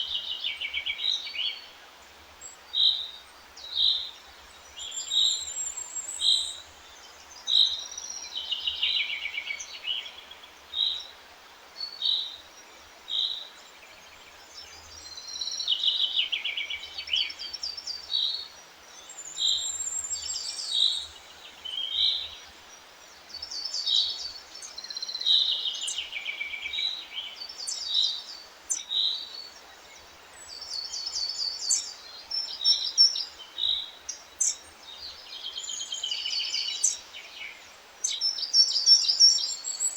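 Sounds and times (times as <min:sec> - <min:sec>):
faint steady hiss: 0:00.0 - 0:39.9
songbirds chirping and trilling: 0:00.0 - 0:39.9.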